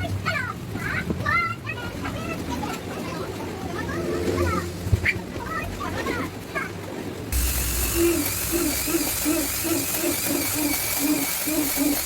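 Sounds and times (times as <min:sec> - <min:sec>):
scroll saw motor whine: 0:07.4 - 0:12.0.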